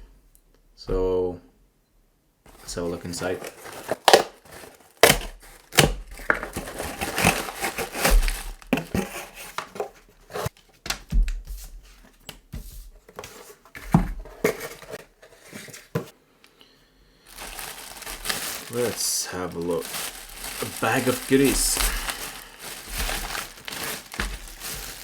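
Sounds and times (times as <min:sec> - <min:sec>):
packing material crinkling: 0:02.5 - 0:10.6, 0:17.3 - 0:25.0.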